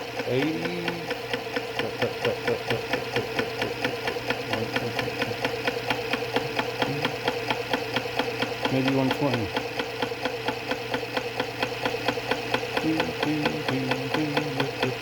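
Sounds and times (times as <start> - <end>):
electric motor hum: 0.0 - 15.0
fast even clicking: 0.1 - 15.0.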